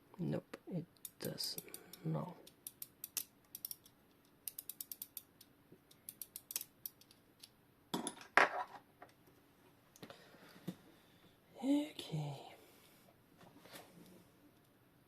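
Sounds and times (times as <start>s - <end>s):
clock mainspring ratchet clicking: 1.0s - 7.2s.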